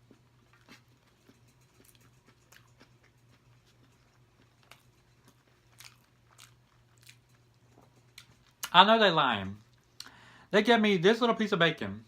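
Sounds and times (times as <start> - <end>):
person chewing food: 0.0 - 8.7
faint low hum: 0.0 - 12.0.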